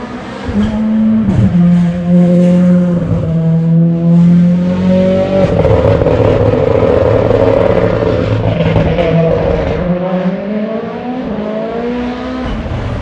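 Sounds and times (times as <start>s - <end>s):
rally car engine at high revs: 0.0s - 13.0s.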